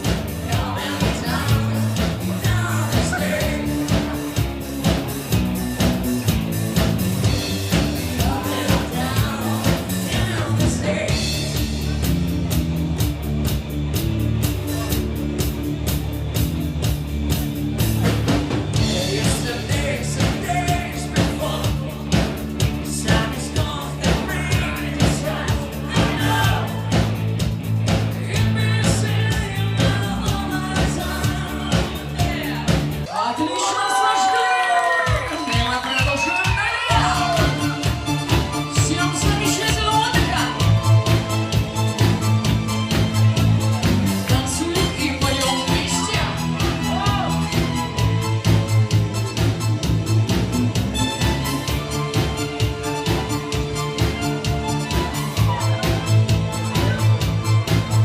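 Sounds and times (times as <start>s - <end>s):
person singing: 0.0s - 4.4s, 7.7s - 11.9s, 18.8s - 27.2s, 28.1s - 33.4s, 34.0s - 42.4s, 44.1s - 47.5s
rock band playing: 0.0s - 33.2s, 34.2s - 58.0s.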